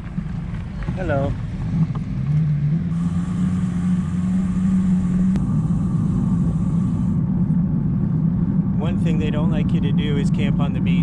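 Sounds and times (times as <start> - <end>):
vehicle engine humming: 0.0 - 11.0.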